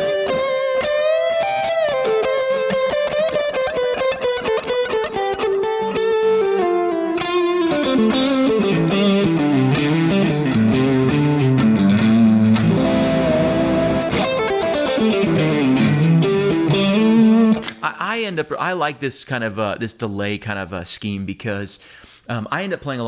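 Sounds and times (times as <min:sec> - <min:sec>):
overdriven electric guitar lead: 0:00.0 - 0:17.9.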